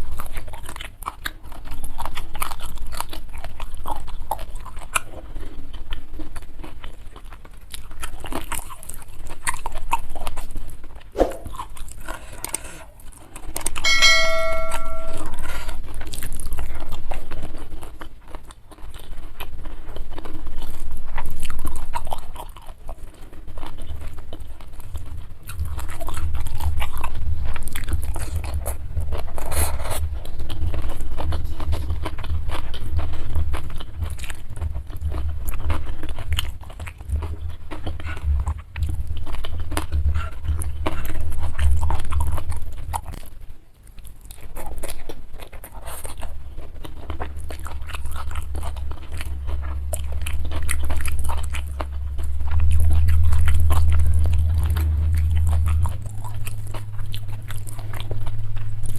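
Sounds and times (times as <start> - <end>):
person chewing food: 0.0 - 58.9
steady high tone: 13.8 - 15.7.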